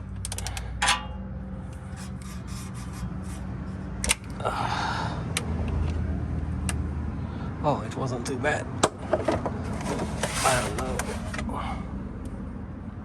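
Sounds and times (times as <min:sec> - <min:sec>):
ratchet wrench clicking: 0:00.1 - 0:01.2
rasping scrape: 0:01.8 - 0:03.6, 0:09.6 - 0:11.4.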